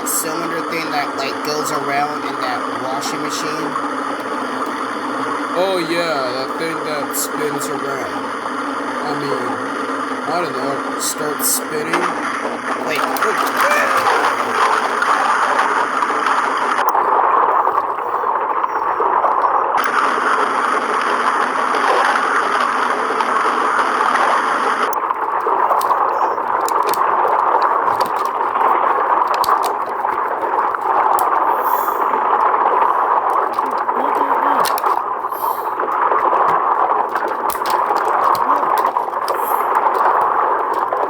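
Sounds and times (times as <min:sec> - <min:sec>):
washing machine water sloshing: 0:25.1 - 0:41.0.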